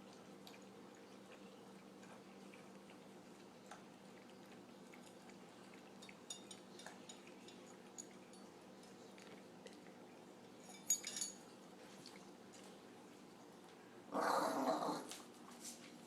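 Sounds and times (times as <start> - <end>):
dog lapping milk: 0.0 - 8.2.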